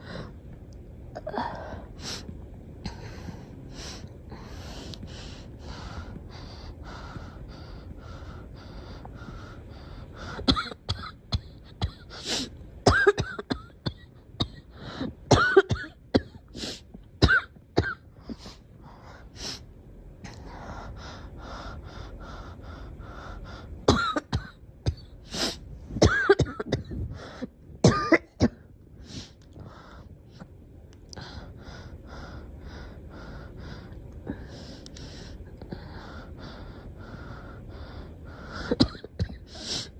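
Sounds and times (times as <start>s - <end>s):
girl coughing: 10.5s - 12.0s, 12.9s - 14.6s, 15.3s - 16.4s, 23.9s - 25.0s, 26.0s - 27.0s, 27.8s - 28.6s.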